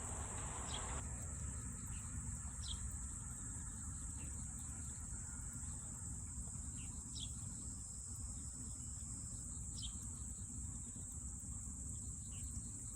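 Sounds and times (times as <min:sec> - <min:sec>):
insects chorus: 0:00.0 - 0:01.0
low steady rumble: 0:00.0 - 0:01.3.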